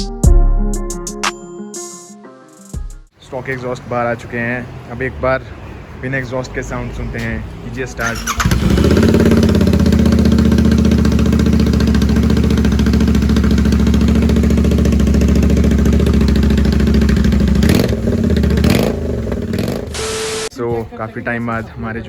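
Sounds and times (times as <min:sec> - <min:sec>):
motorcycle engine idling: 0:08.1 - 0:19.9.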